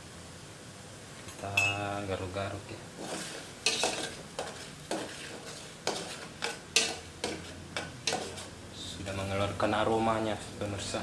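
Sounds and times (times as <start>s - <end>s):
utensil scraping in pot: 2.9s - 9.3s.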